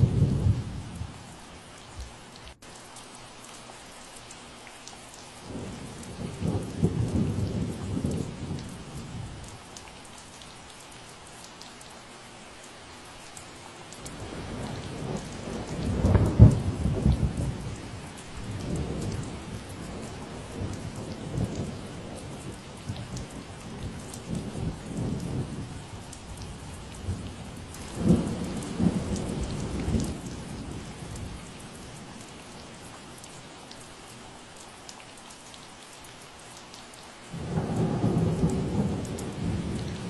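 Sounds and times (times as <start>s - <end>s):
thunder rumbling: 0.0s - 1.2s, 5.5s - 9.5s, 14.1s - 31.9s, 37.4s - 40.0s
steady rain: 0.0s - 40.0s.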